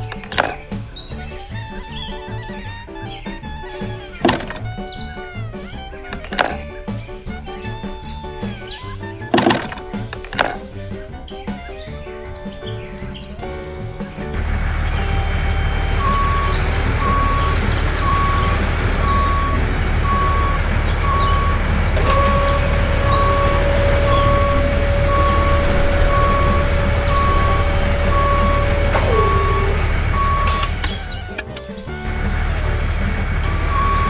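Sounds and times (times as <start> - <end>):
truck engine running: 13.8 - 34.0
steady whine: 14.2 - 31.3, 32.0 - 34.0
reversing alarm beeping: 14.4 - 31.5, 32.1 - 34.0.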